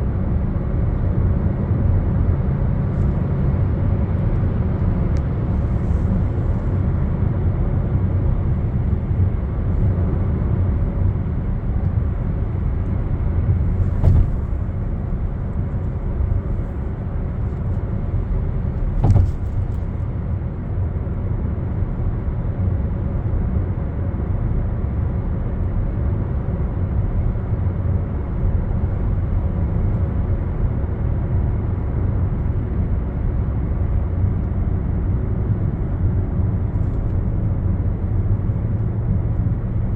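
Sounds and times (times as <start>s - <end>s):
moving vehicle rumble: 0.0s - 23.2s, 25.1s - 39.9s
brief knocks: 13.8s - 15.4s, 18.8s - 19.9s.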